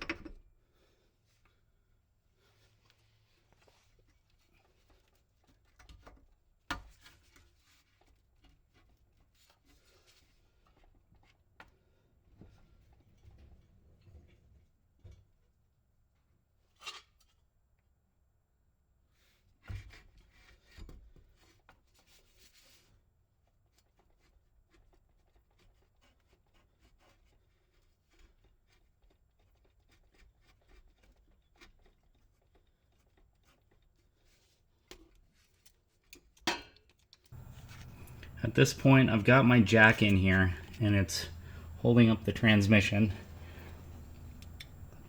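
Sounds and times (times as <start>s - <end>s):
hand tools clinking: 37.4s - 45.0s.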